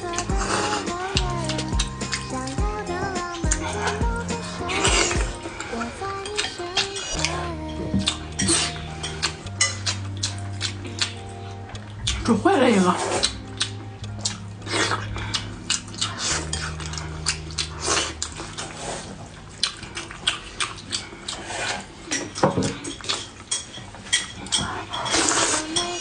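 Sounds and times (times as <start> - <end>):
utensils clinking on a dish: 21.7 - 26.0.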